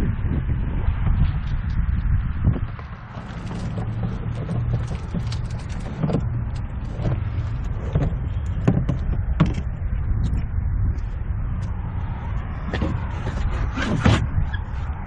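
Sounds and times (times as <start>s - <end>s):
tyre and wind rumble: 0.0s - 15.0s
bike frame rattling: 2.6s - 10.4s.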